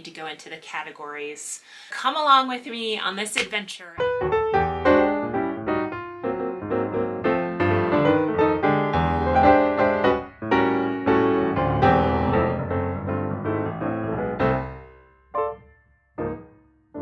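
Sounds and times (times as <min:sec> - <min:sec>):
piano music: 0:04.0 - 0:17.0.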